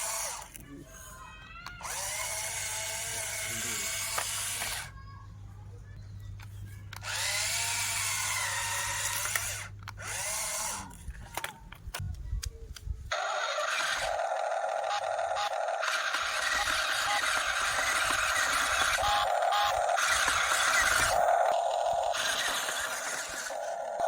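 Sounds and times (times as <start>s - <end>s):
small electric motors whining: 0.0s - 5.1s, 6.4s - 11.5s, 13.1s - 24.0s
scattered clicks: 10.8s - 24.0s
steady higher hum: 13.1s - 24.0s.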